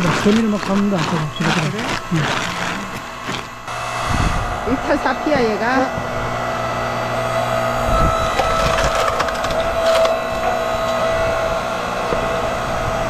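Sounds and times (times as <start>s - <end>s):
wood creaking and splitting: 0.0s - 3.7s, 8.3s - 11.1s
log splitter motor hum: 0.0s - 13.0s.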